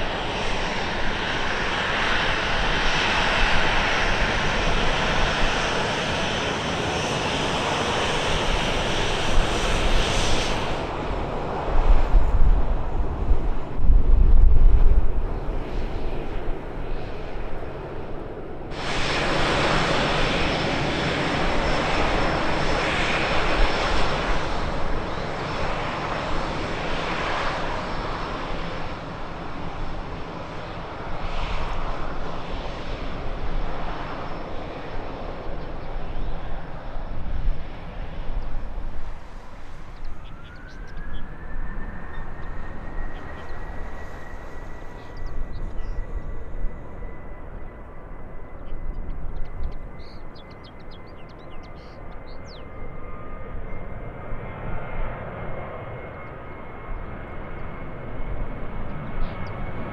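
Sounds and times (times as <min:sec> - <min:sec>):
jet engines roaring: 0:00.0 - 0:59.9
rising engine whine: 0:00.0 - 0:59.9.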